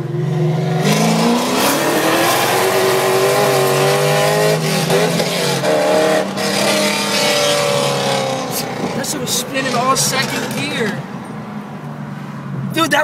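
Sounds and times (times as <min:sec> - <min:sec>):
car engine at full throttle: 0:00.0 - 0:13.0.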